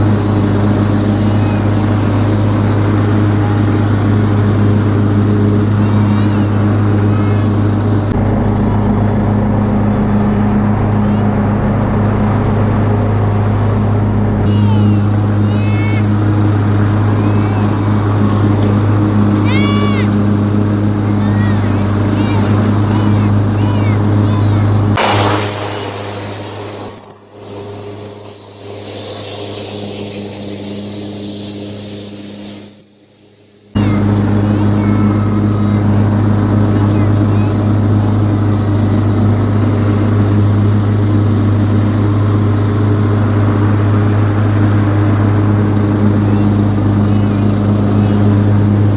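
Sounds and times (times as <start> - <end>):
riding lawn mower engine running: 0.0 - 8.5, 14.4 - 25.7, 33.8 - 48.9.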